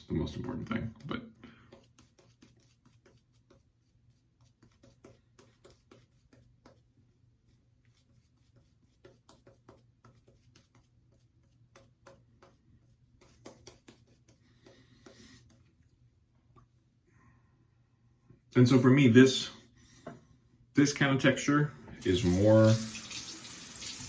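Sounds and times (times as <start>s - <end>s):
shaving brush lathering: 22.0s - 24.0s.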